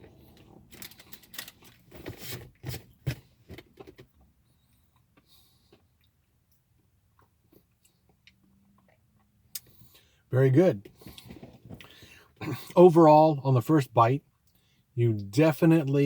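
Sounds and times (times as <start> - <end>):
chewing with wet mouth clicks: 4.9 - 10.0.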